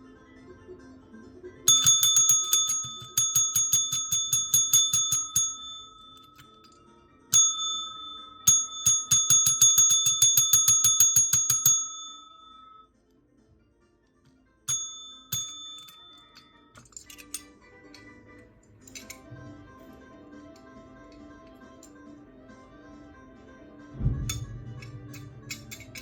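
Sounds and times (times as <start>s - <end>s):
small metal bell ringing: 1.7s - 12.9s, 14.7s - 17.5s.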